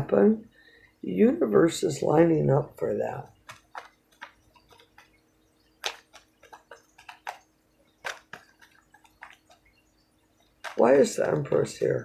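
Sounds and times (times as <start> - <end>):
cards clicking on a table: 3.4 - 5.2, 5.8 - 9.6, 10.6 - 11.8.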